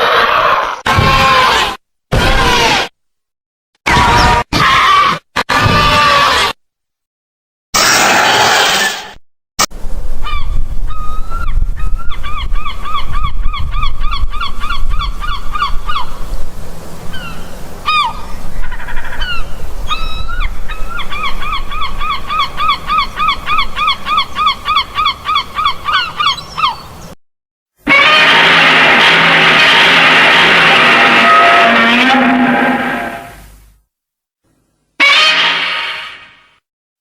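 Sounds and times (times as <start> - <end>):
creature calls dropping in pitch: 27.8 - 33.4, 35.0 - 36.5.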